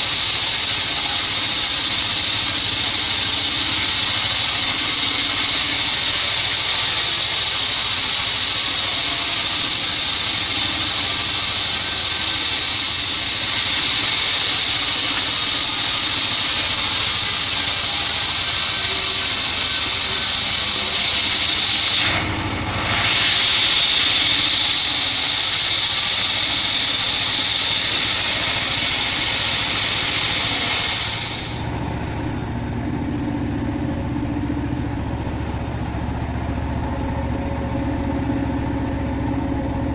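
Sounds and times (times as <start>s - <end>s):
saw blade whining in wood: 0.0s - 31.7s
engine running: 0.0s - 39.9s.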